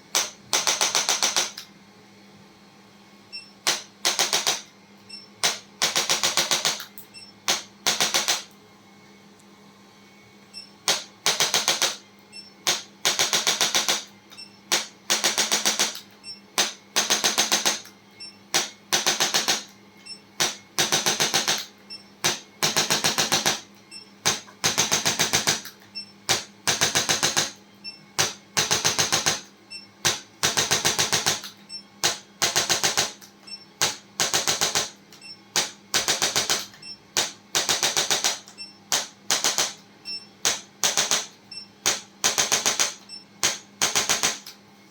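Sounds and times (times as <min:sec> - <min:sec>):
rapid sharp clicks: 0:40.4 - 0:44.6.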